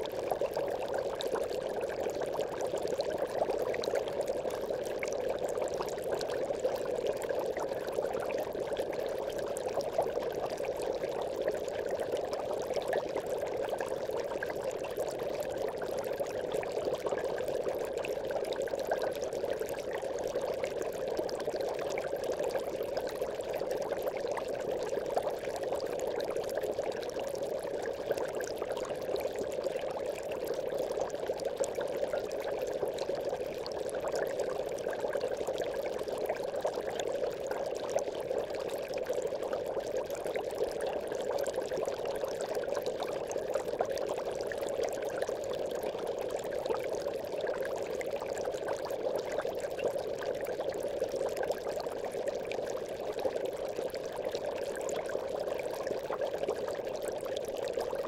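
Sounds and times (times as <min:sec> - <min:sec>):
aquarium bubbling: 0:00.0 - 0:58.0.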